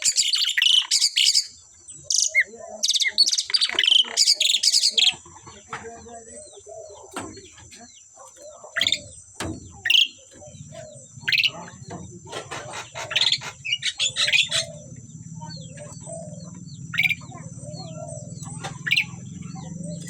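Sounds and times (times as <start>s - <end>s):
starlings chirping and whistling: 0.0s - 20.0s
low hum: 13.7s - 20.0s.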